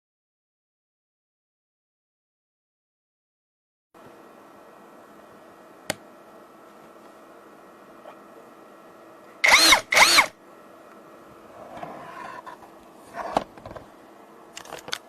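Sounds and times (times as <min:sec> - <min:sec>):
cordless drill motor whine: 0:09.4 - 0:10.4.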